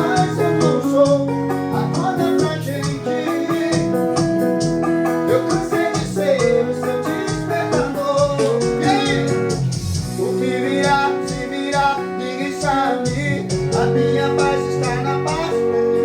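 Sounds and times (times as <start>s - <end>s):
steady beat: 0.0s - 15.7s
bass: 0.0s - 16.0s
melodic guitar line: 0.0s - 16.0s.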